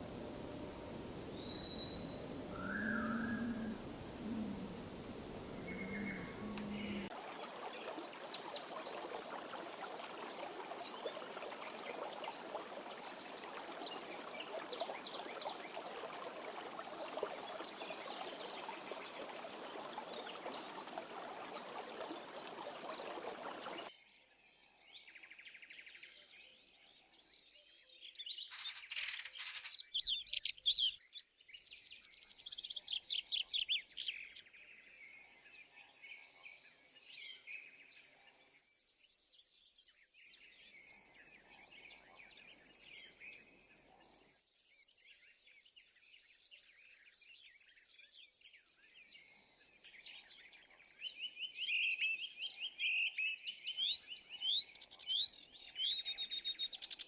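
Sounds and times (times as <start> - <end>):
birds chirping and trilling: 1.4 - 3.8
rushing water: 4.9 - 23.9
high-pitched insect drone: 32.2 - 49.8.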